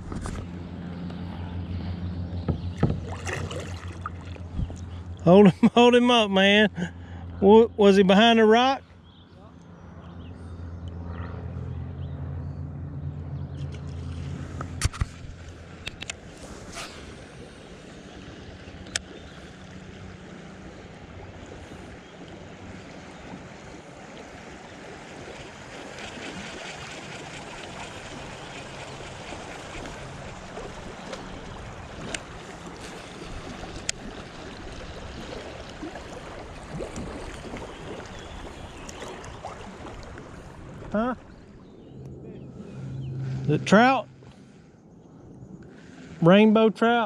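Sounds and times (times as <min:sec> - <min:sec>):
river water running: 0:00.0 - 0:47.0.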